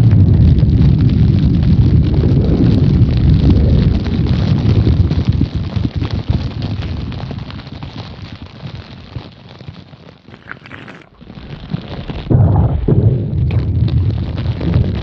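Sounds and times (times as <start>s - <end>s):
vocal imitation of thunder: 0.0s - 5.0s, 12.3s - 15.0s.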